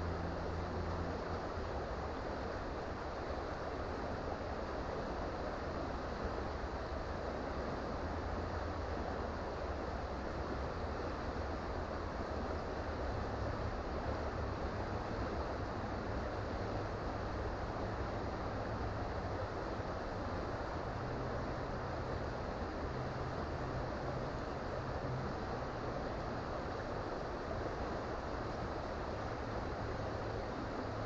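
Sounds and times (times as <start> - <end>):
creek water flowing: 0.0 - 31.0.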